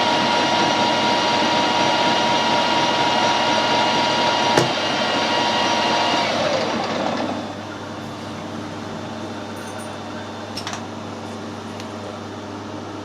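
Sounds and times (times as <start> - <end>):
metal lathe whining: 0.0 - 9.6.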